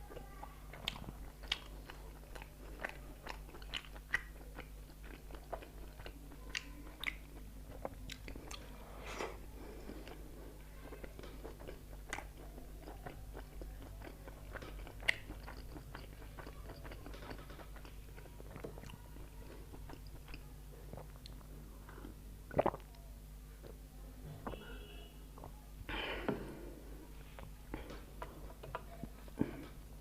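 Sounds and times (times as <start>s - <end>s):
food crunching: 0.1s - 23.0s.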